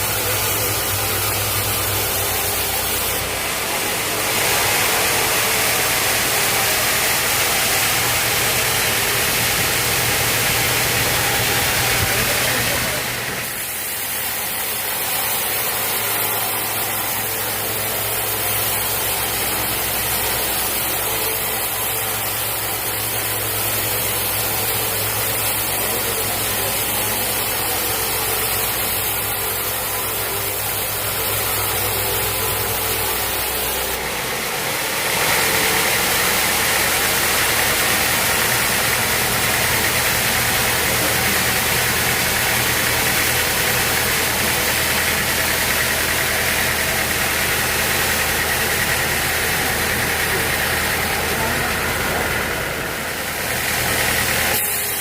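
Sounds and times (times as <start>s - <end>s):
hissing machine noise: 0.0s - 55.0s
sawmill machinery humming: 0.0s - 55.0s.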